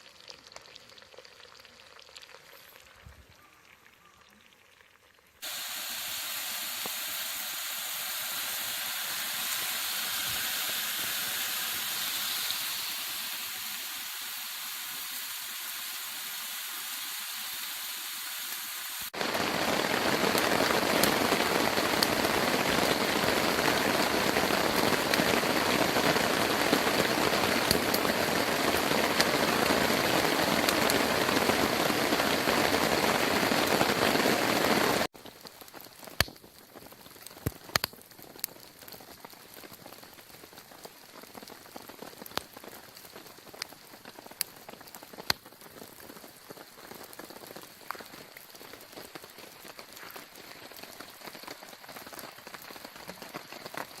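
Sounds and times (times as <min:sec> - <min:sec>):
loud hiss: 0:05.4 - 0:21.2
sharp clicks and pops: 0:36.1 - 0:36.4, 0:37.3 - 0:38.6.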